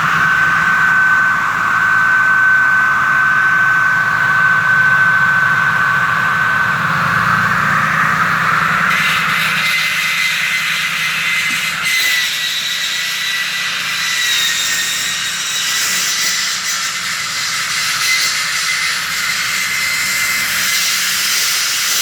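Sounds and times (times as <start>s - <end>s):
low hum: 0.0s - 8.9s
concrete saw cutting concrete: 0.0s - 22.0s.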